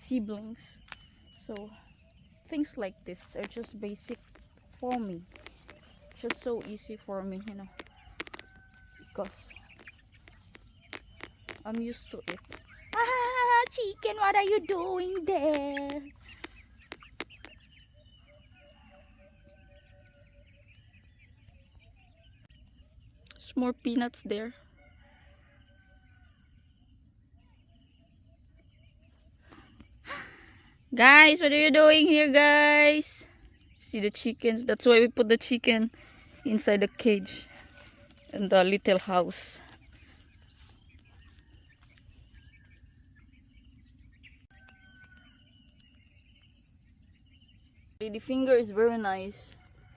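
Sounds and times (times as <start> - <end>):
high-pitched insect drone: 0.0 - 22.4
crickets droning: 0.0 - 49.9
faint bird chirps: 0.0 - 49.9.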